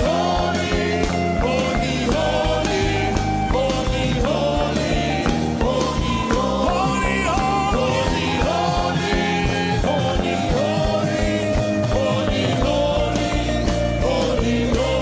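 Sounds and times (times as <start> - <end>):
band with steady beat: 0.0 - 15.0
person singing long notes: 5.6 - 9.3.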